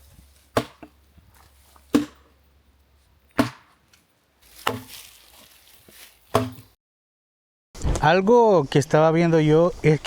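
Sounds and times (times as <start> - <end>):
axe chopping log: 0.5 - 1.0, 1.8 - 2.4, 3.3 - 3.8, 4.6 - 5.0, 6.3 - 6.8.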